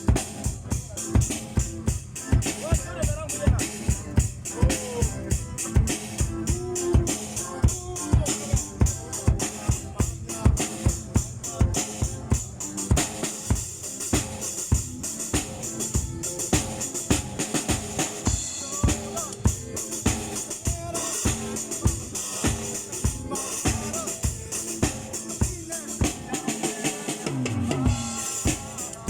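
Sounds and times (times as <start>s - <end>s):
cymbals: 11.8s - 29.0s.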